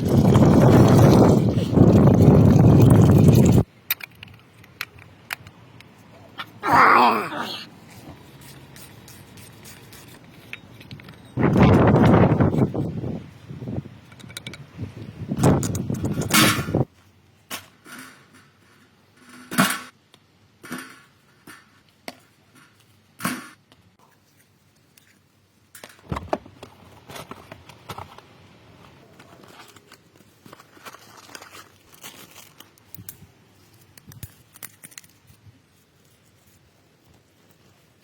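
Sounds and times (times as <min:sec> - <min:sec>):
small clicks and rustles: 0:23.7 - 0:38.0.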